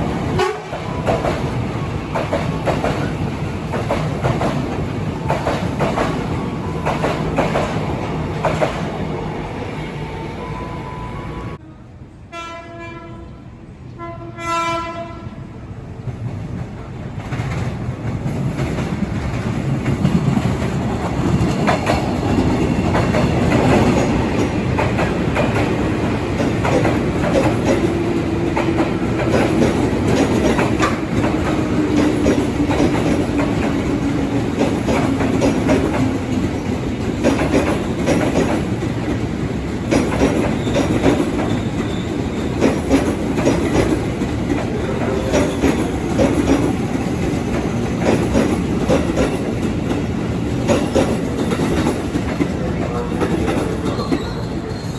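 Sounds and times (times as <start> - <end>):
train wheels clacking over rail joints: 0.0 - 9.0, 16.5 - 54.9
train horn blasts: 0.4 - 0.9, 10.5 - 15.4.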